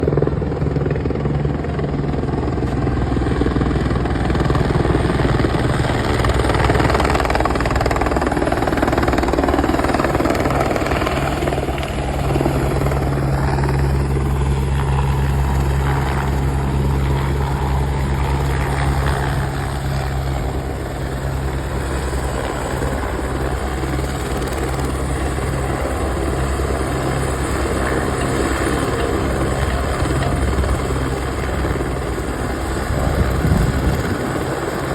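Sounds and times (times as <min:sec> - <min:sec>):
helicopter rotor chopping: 0:00.0 - 0:34.9.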